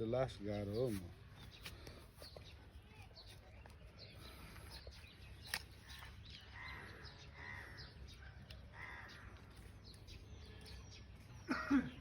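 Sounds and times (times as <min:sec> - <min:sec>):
faint crow cawing: 0:06.5 - 0:09.7.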